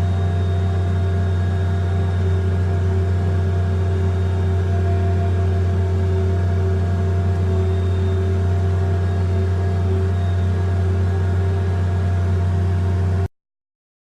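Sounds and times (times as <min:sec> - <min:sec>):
tractor engine running: 0:00.0 - 0:13.3.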